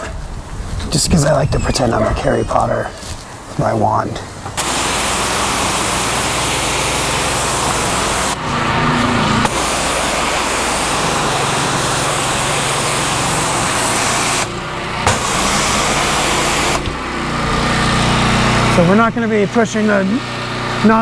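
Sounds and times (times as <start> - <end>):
engine running: 4.4 - 21.0
pressure washer spraying concrete: 4.6 - 21.0.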